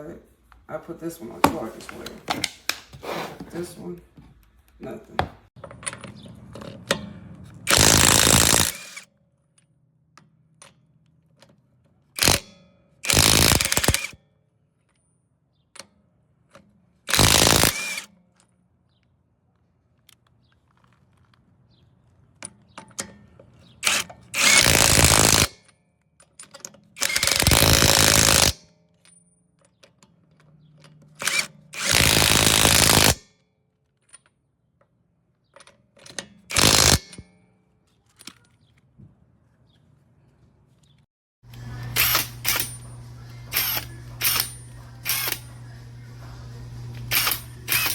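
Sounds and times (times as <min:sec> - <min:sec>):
impact wrench spinning: 0:07.7 - 0:09.0, 0:12.2 - 0:12.4, 0:13.0 - 0:14.2, 0:17.1 - 0:18.1, 0:23.8 - 0:25.5, 0:27.0 - 0:28.6, 0:31.2 - 0:33.2, 0:36.5 - 0:37.2, 0:41.9 - 0:45.6, 0:47.0 - 0:47.9.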